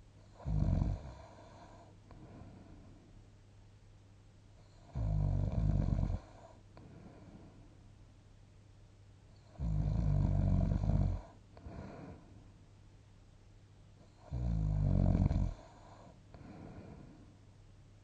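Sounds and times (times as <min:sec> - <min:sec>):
soft breath: 0:01.2 - 0:03.3, 0:06.2 - 0:07.9, 0:11.2 - 0:12.6, 0:15.5 - 0:17.4
person snoring: 0:09.6 - 0:12.2, 0:14.2 - 0:17.1.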